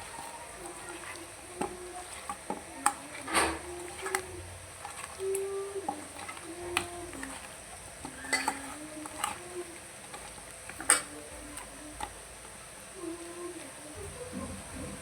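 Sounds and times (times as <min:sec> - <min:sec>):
clicks and knocks against bowl: 0:00.0 - 0:12.2
chicken squelching in a bowl: 0:00.0 - 0:15.0.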